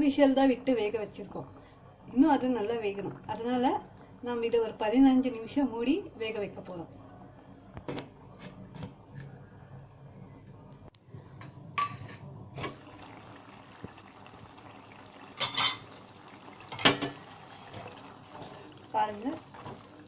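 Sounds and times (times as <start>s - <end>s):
lid and spoon clanking on pan: 15.4s - 15.9s.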